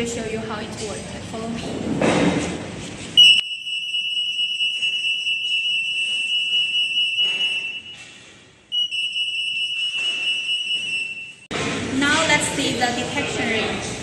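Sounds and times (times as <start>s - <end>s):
anti-theft alarm high-pitched tone: 3.2s - 8.1s, 8.7s - 11.5s.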